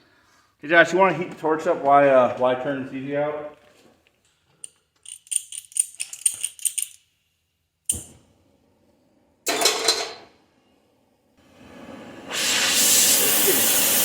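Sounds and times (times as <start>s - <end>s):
gas torch lighting: 11.5s - 14.0s.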